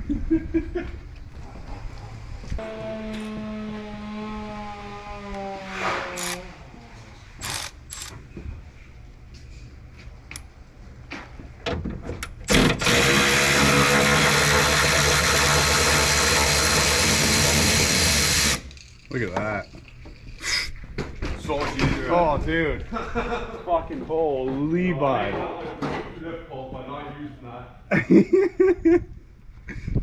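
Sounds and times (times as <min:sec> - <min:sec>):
electric ratchet running: 0:06.2 - 0:06.4, 0:07.4 - 0:08.1, 0:12.5 - 0:18.9.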